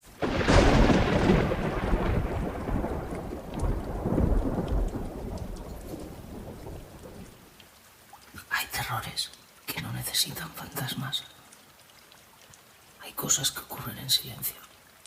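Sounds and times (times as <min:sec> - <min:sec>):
steady rain: 0:00.0 - 0:15.0
thunder rumbling: 0:00.1 - 0:07.5.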